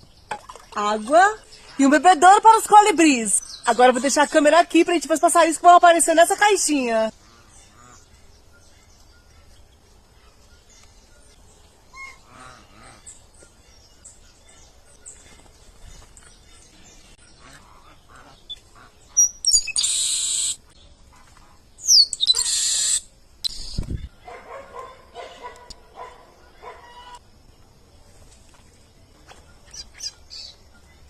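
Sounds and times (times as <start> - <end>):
wild birds chirping: 0.0 - 31.0
loud harsh bird calls: 17.3 - 20.6, 21.8 - 23.8.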